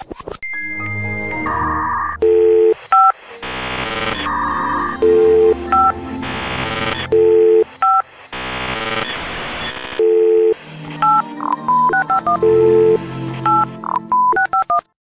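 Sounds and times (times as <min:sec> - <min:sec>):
chord-like music: 0:00.5 - 0:02.2, 0:03.3 - 0:07.8, 0:10.6 - 0:13.9.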